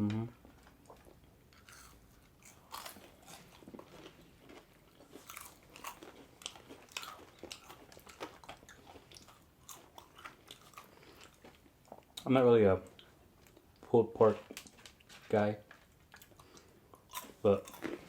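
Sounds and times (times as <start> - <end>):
crunchy chewing: 0.8 - 12.2, 15.7 - 18.0.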